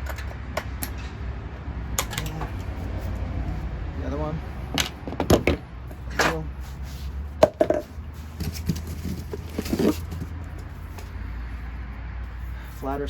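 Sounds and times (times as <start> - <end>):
sharp clicks and knocks of wheel parts: 0.0 - 2.8, 4.7 - 6.5, 7.4 - 11.2.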